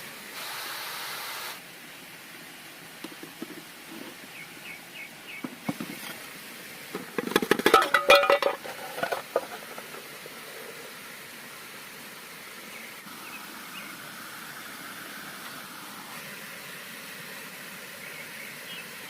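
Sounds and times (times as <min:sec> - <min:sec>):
stream water rushing: 0:00.0 - 0:19.0
metal pot and lid clinking: 0:07.0 - 0:10.1.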